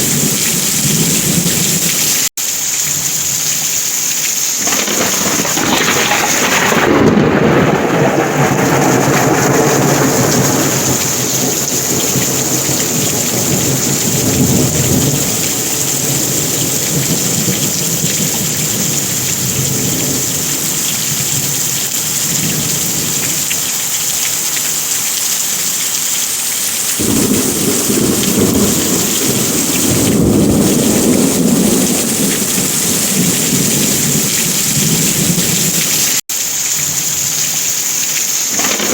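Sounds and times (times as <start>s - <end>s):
heavy rain pouring: 0.0s - 38.9s
rolling thunder: 4.6s - 23.4s, 27.0s - 36.0s, 38.6s - 38.9s.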